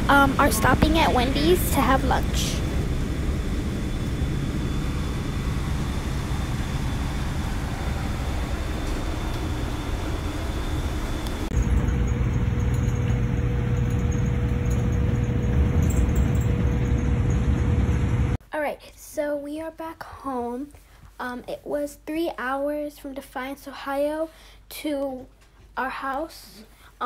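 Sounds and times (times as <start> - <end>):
steady hum: 0.0 - 18.4
vehicle road and engine noise: 0.0 - 18.4.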